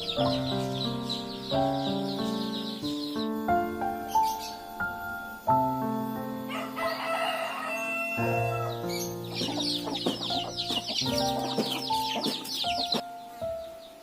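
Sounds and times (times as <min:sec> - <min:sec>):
soft instrumental music: 0:00.0 - 0:14.0
rooster crowing: 0:06.5 - 0:08.8.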